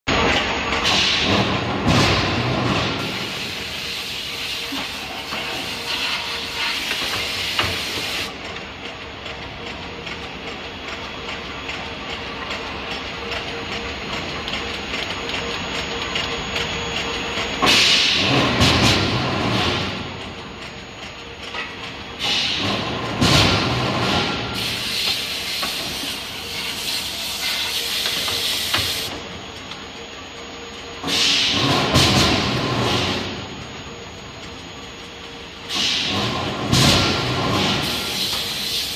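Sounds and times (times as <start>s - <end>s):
machinery hiss: 3.0s - 8.3s, 23.4s - 29.1s, 31.0s - 33.2s, 35.5s - 38.9s.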